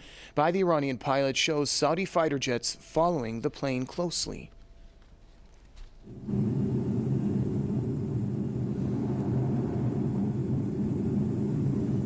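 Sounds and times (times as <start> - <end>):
airliner engine drone: 6.1 - 12.0.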